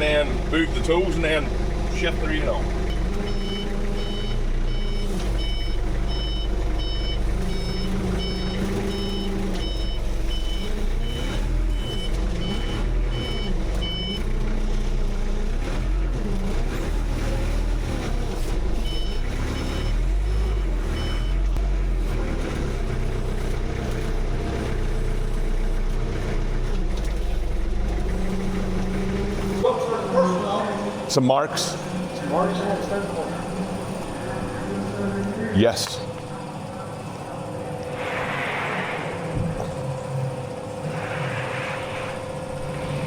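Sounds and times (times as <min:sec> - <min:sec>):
forklift engine rumbling: 0:00.0 - 0:43.0
reversing alarm beeping: 0:00.6 - 0:14.4, 0:17.4 - 0:21.6.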